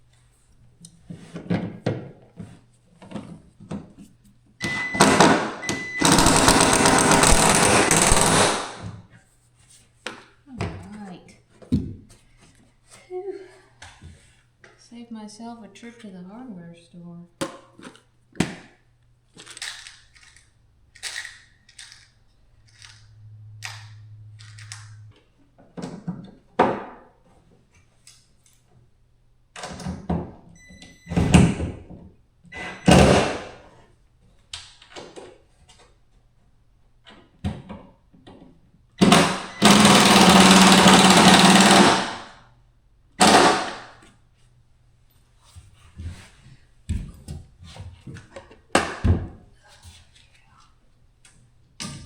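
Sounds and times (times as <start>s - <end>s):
power drill running: 4.6s - 8.8s, 39.0s - 42.3s.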